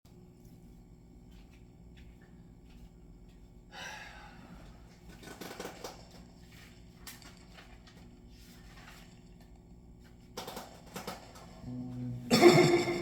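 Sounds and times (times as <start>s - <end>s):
low electrical hum: 0.1s - 13.0s.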